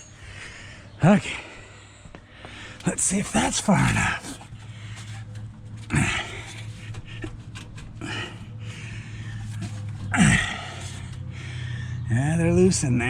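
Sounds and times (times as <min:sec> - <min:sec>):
low hum: 0:00.0 - 0:13.0
man grunting and exhaling: 0:05.9 - 0:07.2, 0:08.0 - 0:11.9.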